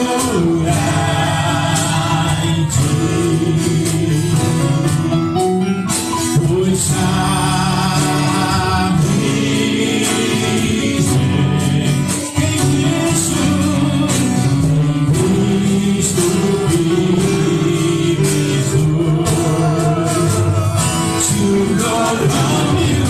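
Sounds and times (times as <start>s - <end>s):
instrumental backing: 0.0s - 23.0s
person singing gospel song: 0.0s - 23.0s.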